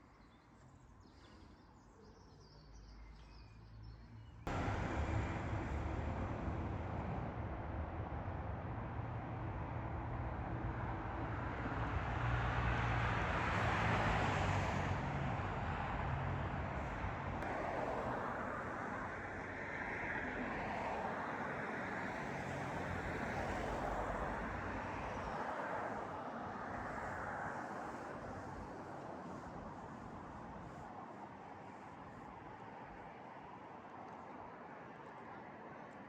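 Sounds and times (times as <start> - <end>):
low hum: 4.5 - 12.2
train rumbling and rushing: 4.5 - 19.6.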